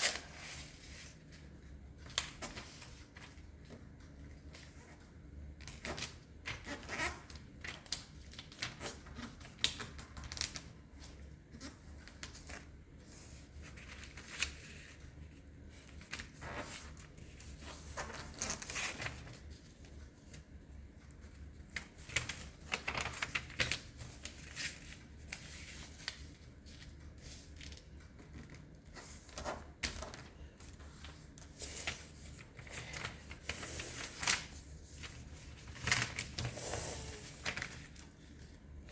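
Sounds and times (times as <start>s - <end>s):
paper rustling and creasing: 0.0s - 1.5s, 21.5s - 38.9s.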